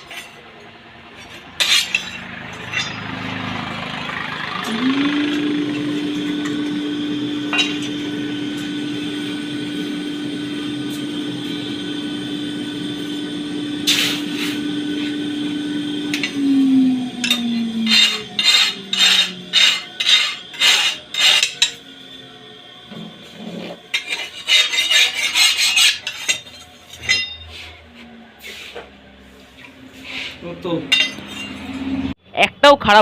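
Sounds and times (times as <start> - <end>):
metal tools striking metal: 1.2 - 3.6, 17.2 - 21.8, 23.9 - 27.5, 30.9 - 31.9
machine hum winding down: 1.9 - 24.0, 27.7 - 32.2.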